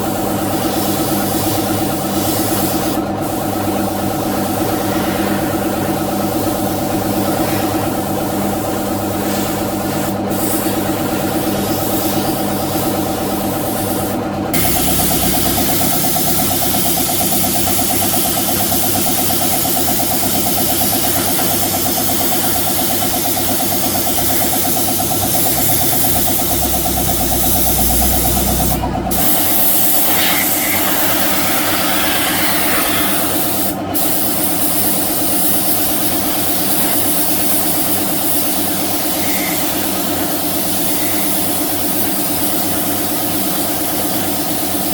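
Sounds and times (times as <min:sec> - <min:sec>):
motor-driven machine humming with hiss: 0:14.6 - 0:34.8.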